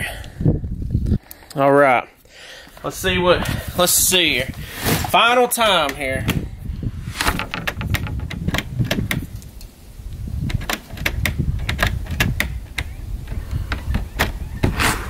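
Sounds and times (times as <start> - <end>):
sharp clicks and knocks: 7.2 - 9.5, 10.4 - 14.8.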